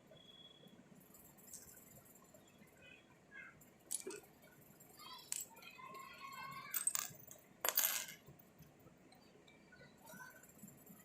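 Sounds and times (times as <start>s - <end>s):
small hard objects clinking: 3.9s - 4.2s, 6.6s - 8.3s.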